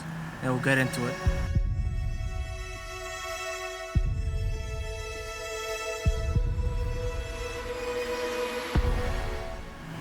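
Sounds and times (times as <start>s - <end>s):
deep bass thump: 1.3s - 2.7s, 4.0s - 5.2s, 6.1s - 7.4s, 8.8s - 9.8s.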